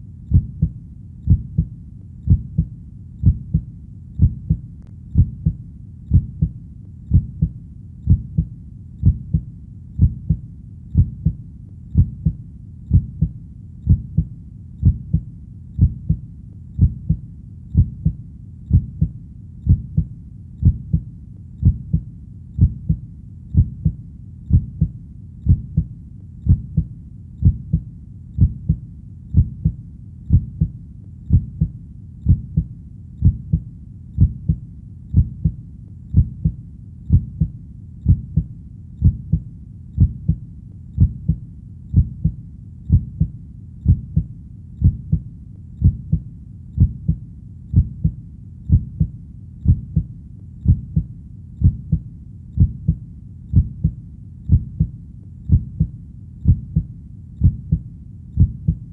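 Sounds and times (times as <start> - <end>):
heartbeat thumps: 0.0 - 40.4, 41.0 - 58.9
faint low rumble: 0.0 - 58.9.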